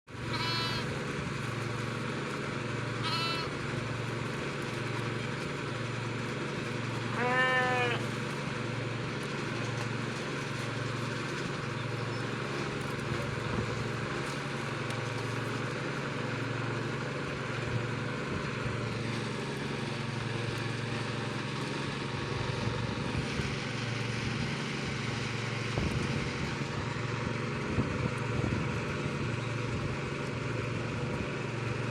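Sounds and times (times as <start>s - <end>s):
sheep bleating: 0.2s - 1.0s, 3.0s - 3.6s, 7.1s - 8.2s.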